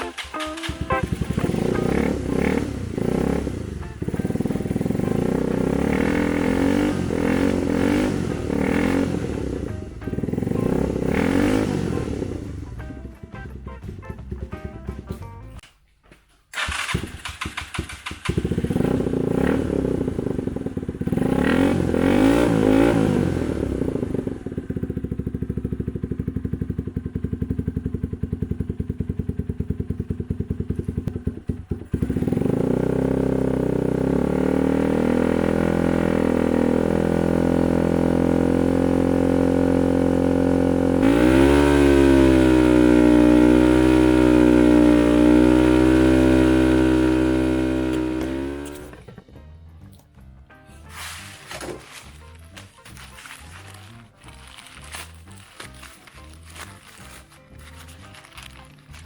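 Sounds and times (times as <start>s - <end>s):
motorcycle engine revving: 0.0s - 15.2s, 16.5s - 49.2s, 50.9s - 59.0s.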